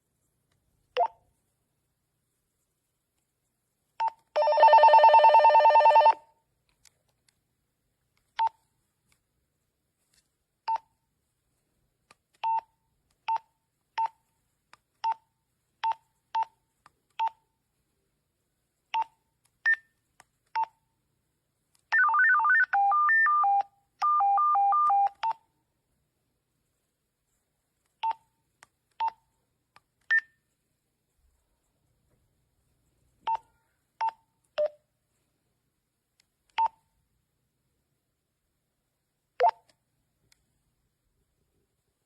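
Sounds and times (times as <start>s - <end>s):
beeps call tune: 22.0s - 25.4s.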